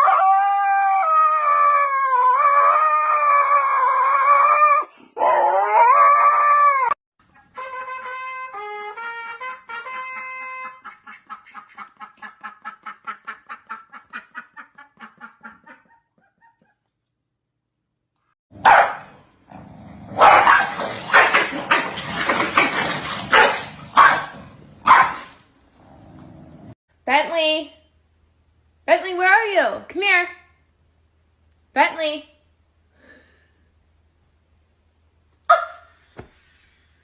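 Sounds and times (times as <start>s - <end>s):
dog barking harshly: 18.6s - 19.2s, 20.1s - 25.4s.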